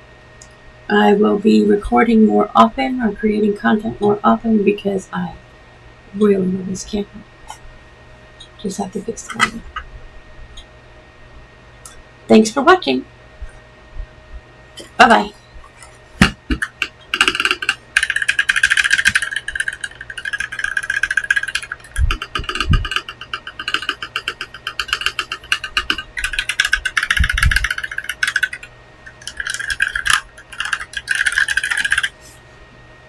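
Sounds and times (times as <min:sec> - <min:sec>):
mechanical keyboard typing: 0:09.3 - 0:09.6, 0:16.2 - 0:32.3
deeper keyboard thuds: 0:16.2 - 0:19.2.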